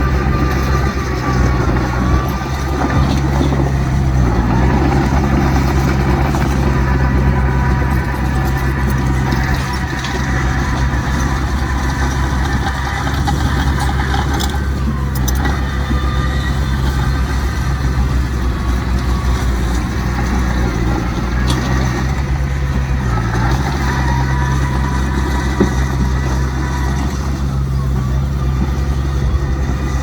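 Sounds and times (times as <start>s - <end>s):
heavy diesel engine running: 0.0s - 30.0s.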